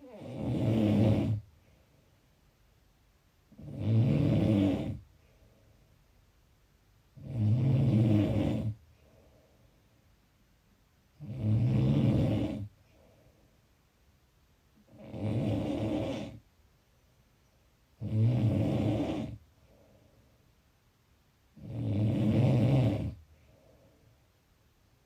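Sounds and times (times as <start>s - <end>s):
snoring: 0.0s - 1.5s, 3.5s - 5.1s, 7.2s - 8.8s, 11.2s - 12.8s, 14.9s - 16.4s, 18.0s - 19.4s, 21.6s - 23.2s.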